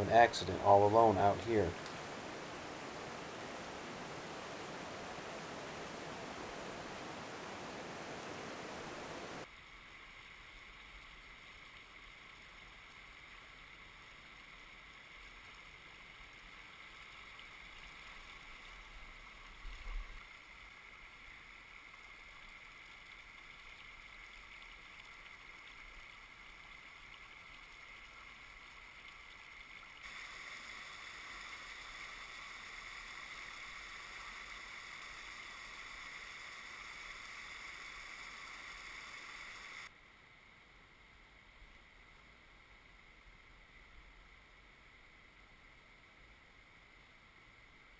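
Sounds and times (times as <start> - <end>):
flowing creek water: 0.0 - 39.9.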